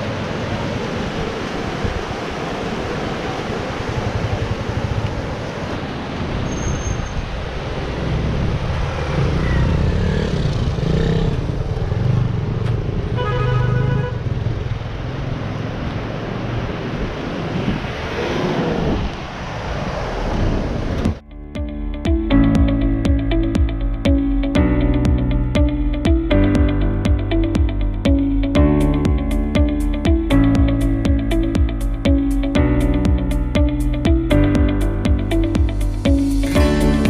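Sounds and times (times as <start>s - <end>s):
road traffic rumble: 0.0s - 37.0s
vehicle horn honking: 13.1s - 14.2s.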